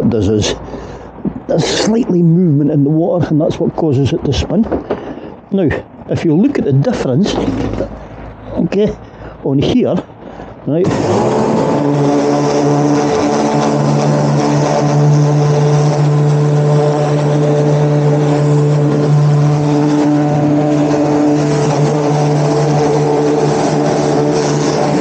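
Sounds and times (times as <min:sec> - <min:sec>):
pressure washer motor hum: 0:10.3 - 0:25.0.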